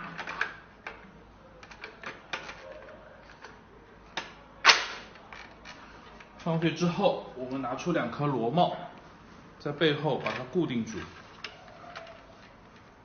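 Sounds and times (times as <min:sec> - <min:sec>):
sharp plastic clack: 0:04.2 - 0:05.6.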